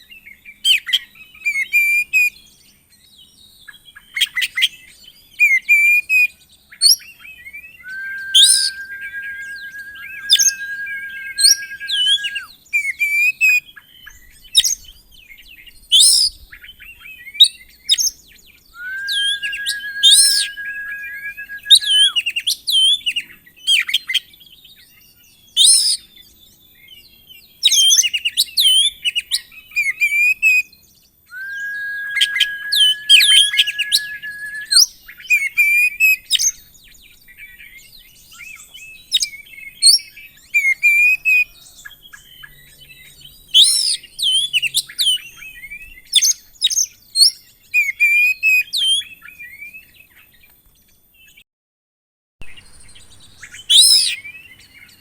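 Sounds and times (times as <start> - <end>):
long steady bird whistle: 6.9 - 13.4, 17.0 - 23.0, 30.0 - 36.8, 52.4 - 55.0
bird singing varied song: 7.0 - 12.5, 18.0 - 22.2, 31.0 - 34.9, 52.4 - 55.0.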